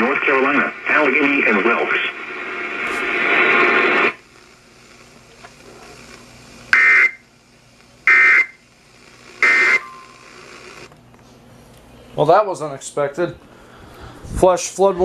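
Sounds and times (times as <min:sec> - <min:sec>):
loud noisy radio sound: 0:00.0 - 0:10.9
loud screeching data bursts: 0:06.0 - 0:07.2, 0:08.0 - 0:10.9.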